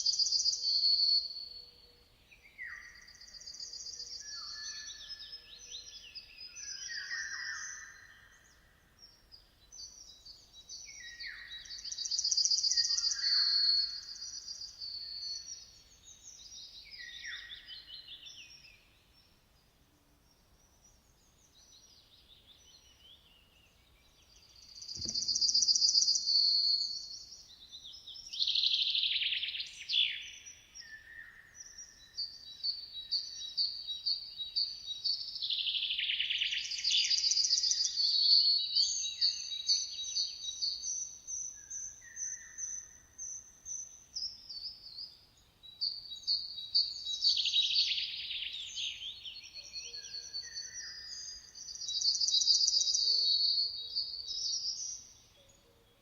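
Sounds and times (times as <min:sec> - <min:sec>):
songbirds singing: 0:00.0 - 0:56.0
soft low thump: 0:25.0 - 0:25.6.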